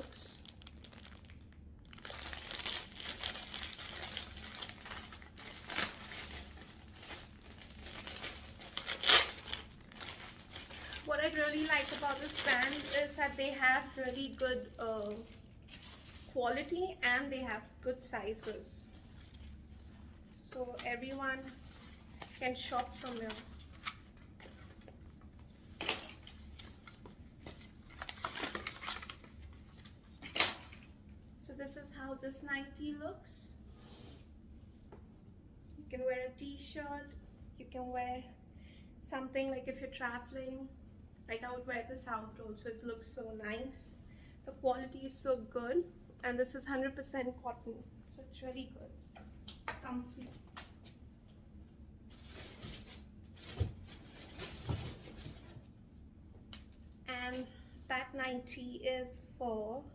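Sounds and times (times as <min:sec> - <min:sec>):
packaging crinkling and rustling: 0:00.0 - 0:16.4, 0:20.8 - 0:31.0, 0:52.0 - 0:55.8.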